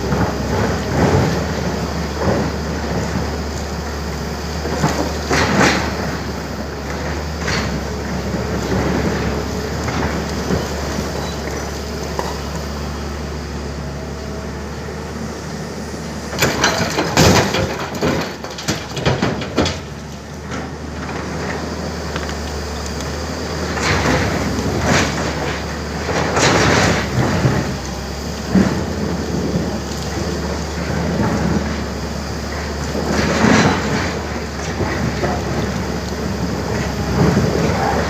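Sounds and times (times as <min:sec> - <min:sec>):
excavator engine running: 0:00.0 - 0:38.0
heavy knocks and scraping: 0:16.3 - 0:21.7, 0:23.6 - 0:38.0.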